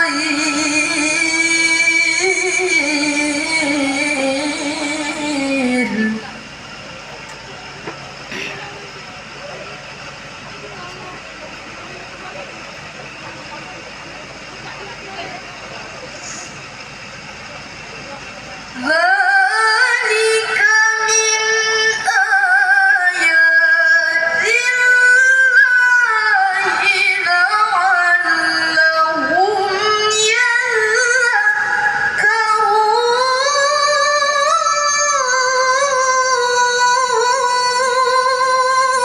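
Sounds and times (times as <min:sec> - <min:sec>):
woman reciting melodically: 0:00.0 - 0:06.8, 0:18.8 - 0:39.0.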